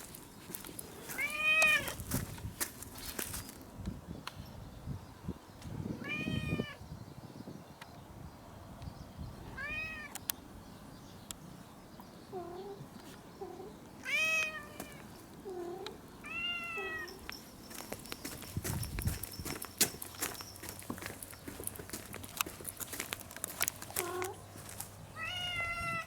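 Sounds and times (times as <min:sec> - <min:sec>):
cat meowing: 0:01.1 - 0:02.0, 0:13.5 - 0:17.1, 0:25.2 - 0:26.0.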